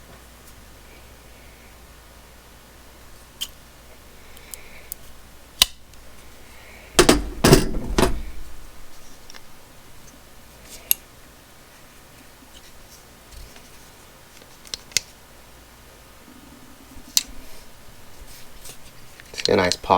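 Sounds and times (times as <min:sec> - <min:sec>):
metal clunks and rattles: 0:07.0 - 0:08.8.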